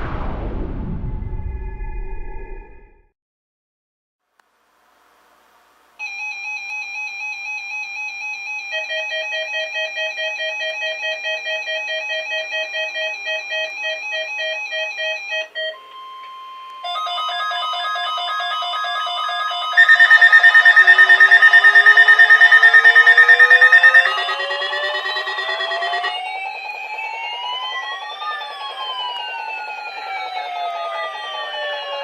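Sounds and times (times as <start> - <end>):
steady alert tone: 19.8 - 26.7
low fast-pulsing beep: 19.8 - 30.3
warbling alert beeps: 19.8 - 30.4.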